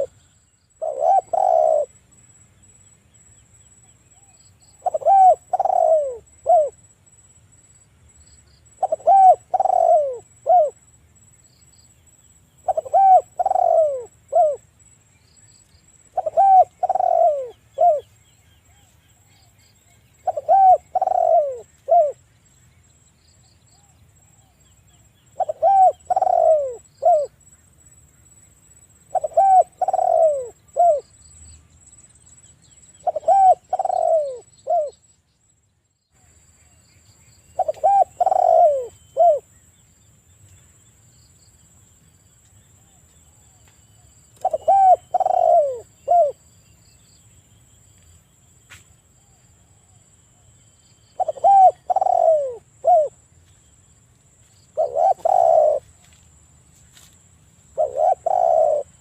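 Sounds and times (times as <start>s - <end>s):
dove cooing: 0.0s - 0.2s, 0.8s - 2.0s, 4.2s - 6.8s, 8.8s - 10.8s, 12.6s - 14.6s, 16.1s - 18.1s, 20.2s - 22.2s, 25.3s - 27.4s, 29.1s - 31.1s, 33.0s - 35.0s, 37.6s - 39.5s, 44.4s - 46.4s, 51.2s - 53.2s, 54.7s - 56.0s, 57.7s - 59.0s.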